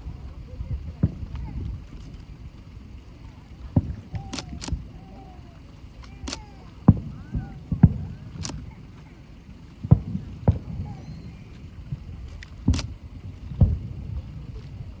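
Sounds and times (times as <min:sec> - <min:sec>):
firework booms and cracks: 0:06.2 - 0:08.7, 0:09.8 - 0:14.3.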